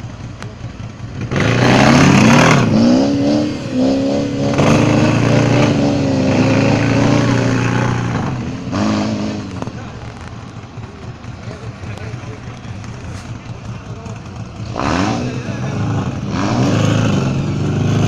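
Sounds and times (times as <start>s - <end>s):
vehicle engine revving hard: 0.0s - 18.0s.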